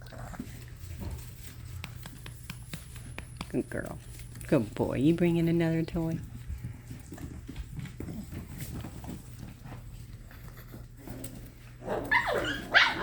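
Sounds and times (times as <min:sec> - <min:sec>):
puppy play growls: 0:00.0 - 0:01.8, 0:06.6 - 0:13.0
low steady hum: 0:00.0 - 0:13.0
puppies scuffling: 0:00.0 - 0:13.0
puppy yip: 0:12.1 - 0:13.0.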